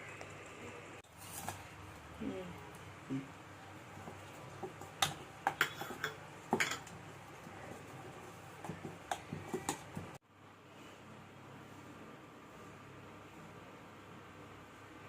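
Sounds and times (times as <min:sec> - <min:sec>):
utensils clinking against pot: 0:05.5 - 0:06.9.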